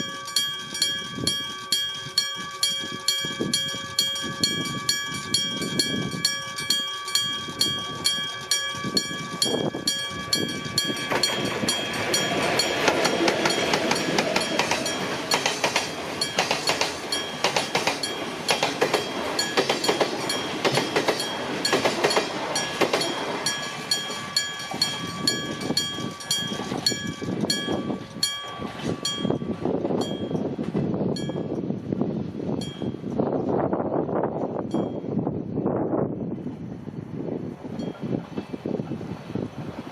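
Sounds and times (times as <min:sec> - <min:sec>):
level crossing bell ringing: 0:00.0 - 0:30.5
train wheels running over rails: 0:00.0 - 0:31.4, 0:37.6 - 0:39.9.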